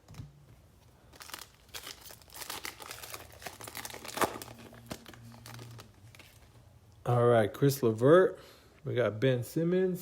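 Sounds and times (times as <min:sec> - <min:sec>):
plastic wrapper crinkling and tearing: 0:00.9 - 0:06.7.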